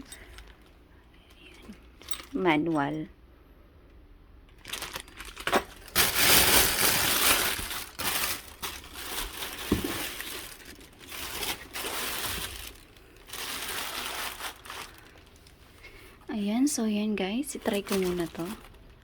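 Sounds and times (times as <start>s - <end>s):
packaging crinkling and rustling: 0.0s - 2.4s, 4.5s - 16.3s, 17.3s - 19.0s.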